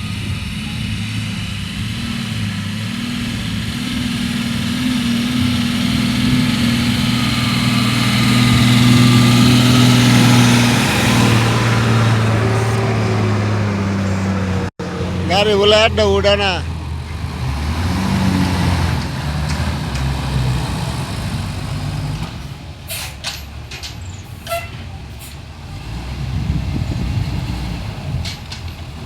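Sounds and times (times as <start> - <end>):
diesel engine running: 0.0 - 29.0.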